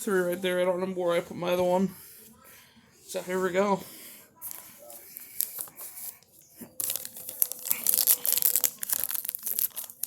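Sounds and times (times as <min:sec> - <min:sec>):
wrapper tearing and crinkling: 0:06.8 - 0:10.0.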